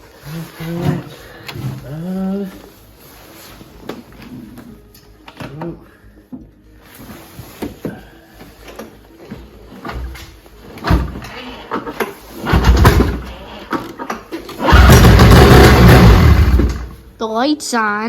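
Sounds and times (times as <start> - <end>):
snowmobile engine cranking: 12.4 - 13.4, 14.5 - 16.9.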